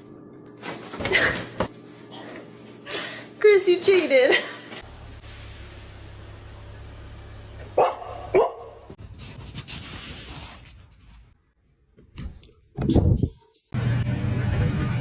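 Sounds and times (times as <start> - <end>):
dog barking: 7.8 - 8.9.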